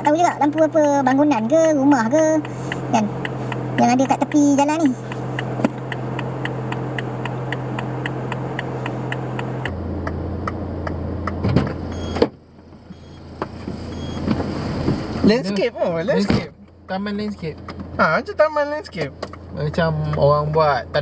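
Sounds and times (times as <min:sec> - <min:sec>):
faint regular ticking: 0:00.0 - 0:12.2, 0:16.6 - 0:21.0
car engine idling: 0:00.0 - 0:21.0.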